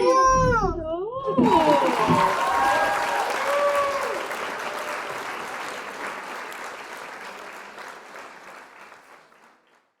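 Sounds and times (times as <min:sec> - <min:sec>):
applause: 0:01.3 - 0:10.0.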